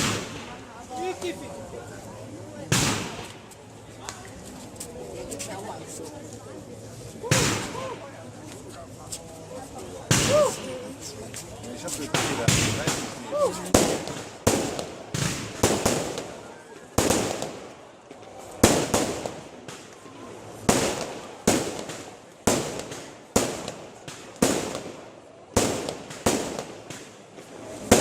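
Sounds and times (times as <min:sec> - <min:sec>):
fireworks bursting with echoes: 0:00.0 - 0:01.4, 0:02.6 - 0:03.7, 0:07.2 - 0:08.2, 0:10.0 - 0:11.3, 0:12.0 - 0:28.0.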